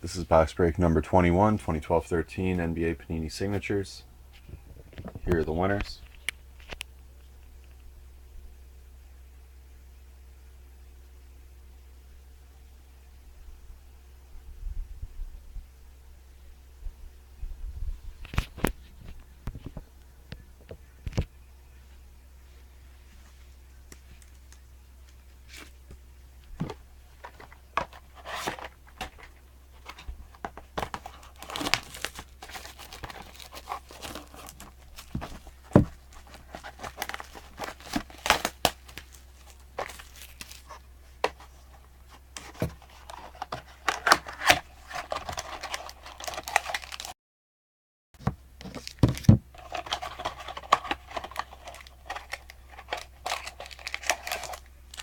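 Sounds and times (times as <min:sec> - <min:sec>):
plastic packaging tearing and crinkling: 0:27.2 - 0:40.8, 0:42.4 - 0:47.1, 0:48.6 - 0:55.0.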